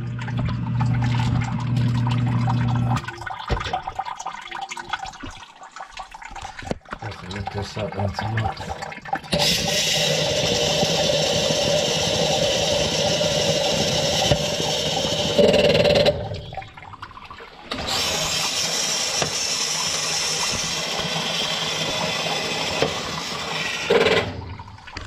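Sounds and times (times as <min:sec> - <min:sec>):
sump pump motor running: 0:00.0 - 0:03.1, 0:09.3 - 0:16.7, 0:17.6 - 0:25.0.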